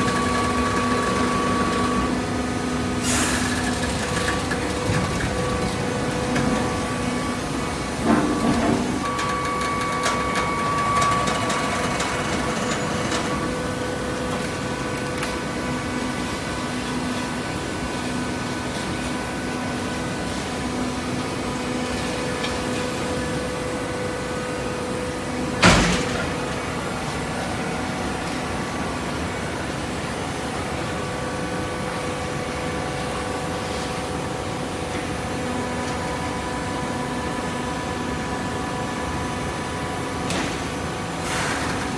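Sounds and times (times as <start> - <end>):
loud clunk: 25.6 - 26.7.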